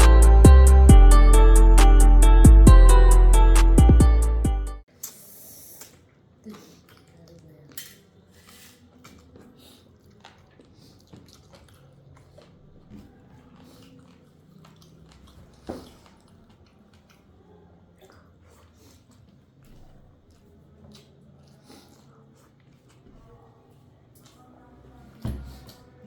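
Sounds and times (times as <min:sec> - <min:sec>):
mouth clicks: 0:04.9 - 0:07.8
person chewing food: 0:05.8 - 0:23.4.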